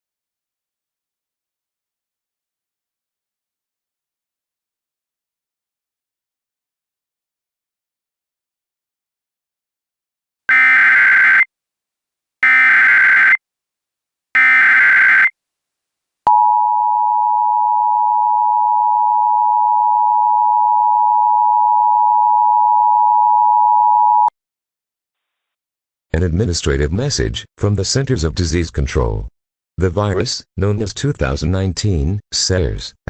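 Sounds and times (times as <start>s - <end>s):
steady two-tone alert signal: 10.5s - 11.5s, 12.4s - 13.4s, 14.4s - 15.3s.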